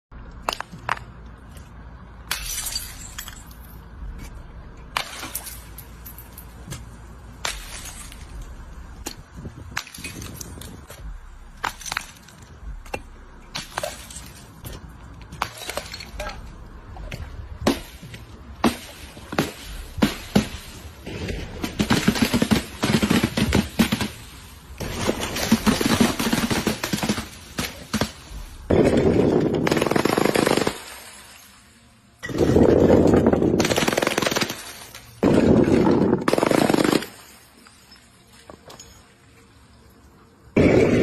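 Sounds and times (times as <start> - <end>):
sharp cracks and clinks: 0.3 - 16.6.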